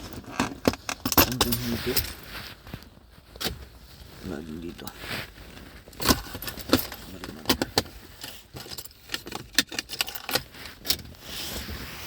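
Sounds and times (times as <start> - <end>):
keys jangling: 8.3 - 11.0.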